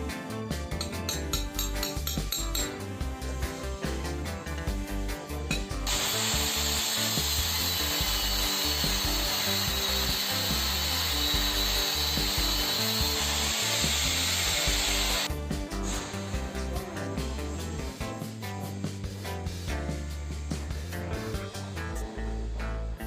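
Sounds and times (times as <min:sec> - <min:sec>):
background music: 0:00.0 - 0:23.0
power tool rasping: 0:05.8 - 0:16.1.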